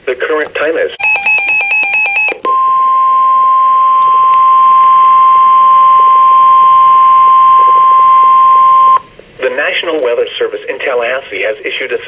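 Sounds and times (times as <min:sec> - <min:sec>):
high steady alarm beep: 0:01.0 - 0:09.1.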